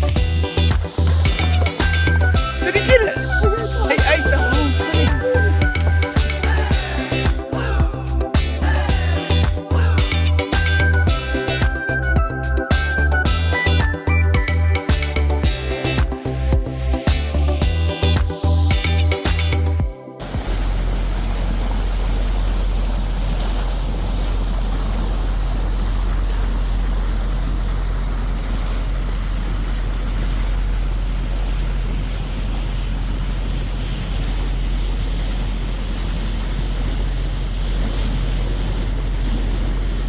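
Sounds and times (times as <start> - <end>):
rush of water and waves: 0.0 - 14.1, 14.8 - 40.0
constant low rumble: 0.0 - 40.0
wind buffeting microphone: 20.2 - 40.0.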